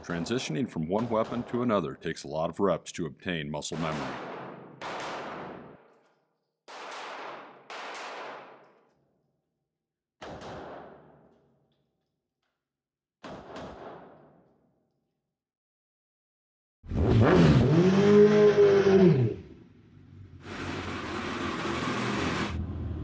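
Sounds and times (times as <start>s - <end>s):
gunshots with ringing decay: 0.0s - 1.8s, 3.7s - 6.0s, 6.7s - 8.9s, 10.2s - 11.7s, 13.2s - 14.8s.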